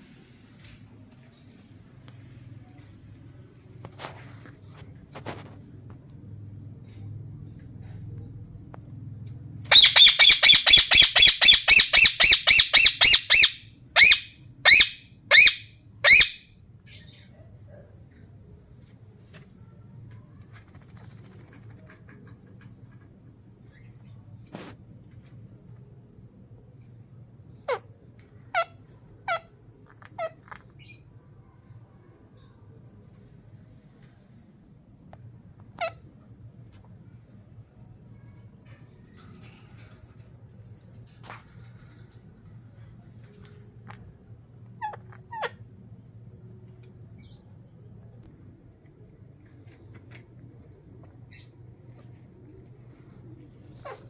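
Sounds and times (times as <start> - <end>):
insect chirring: 0.0 - 54.0
parakeets screeching: 9.7 - 16.4, 44.8 - 45.6.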